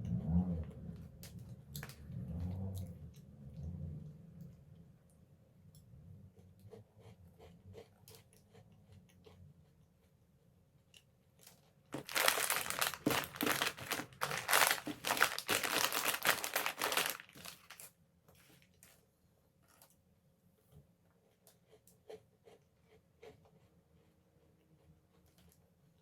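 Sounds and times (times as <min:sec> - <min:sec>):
cookies being chewed: 0:11.4 - 0:17.9
plastic snack packet crinkling: 0:11.4 - 0:19.0.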